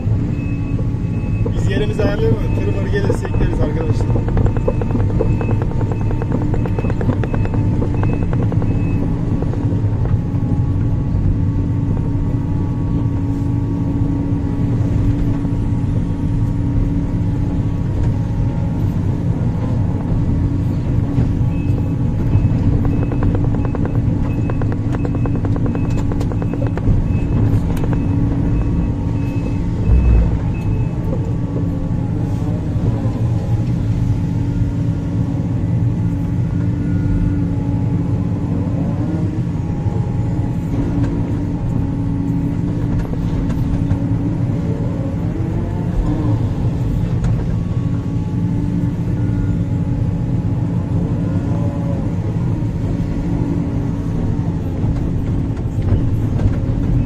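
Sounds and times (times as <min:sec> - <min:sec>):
diesel engine running: 0:00.0 - 0:57.0
hydraulic whine: 0:00.0 - 0:57.0.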